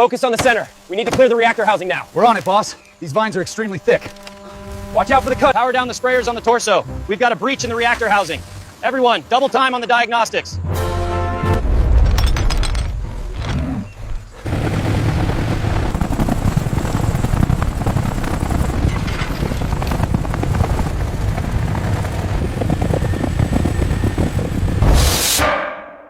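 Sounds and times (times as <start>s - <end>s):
low rumble with crackling clatter: 11.6s - 24.9s.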